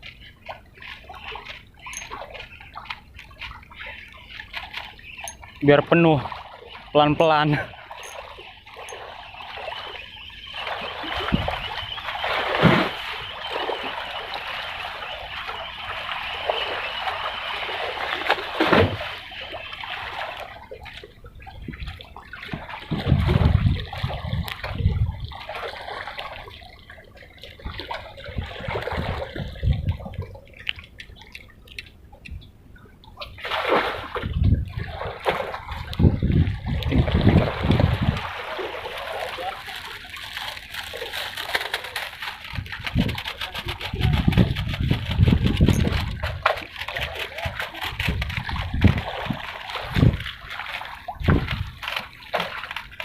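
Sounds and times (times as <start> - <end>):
water splashing and sloshing: 0.0 - 53.0.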